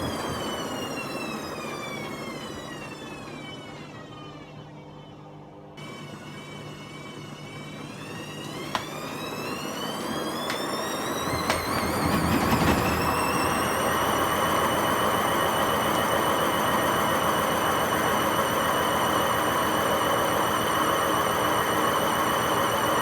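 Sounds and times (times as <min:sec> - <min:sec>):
washing machine drum spinning: 0:06.3 - 0:23.0.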